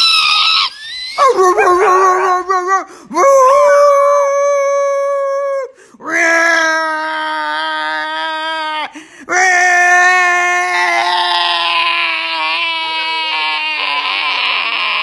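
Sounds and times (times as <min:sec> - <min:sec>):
dog howling: 0:01.2 - 0:04.7.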